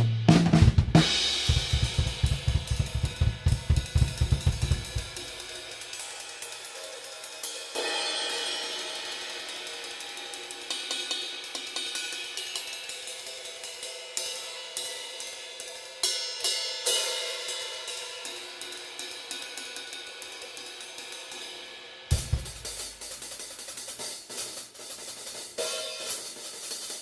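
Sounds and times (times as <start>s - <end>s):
crash cymbals ringing: 4.9s - 23.7s
hi-hat strokes: 22.1s - 27.0s.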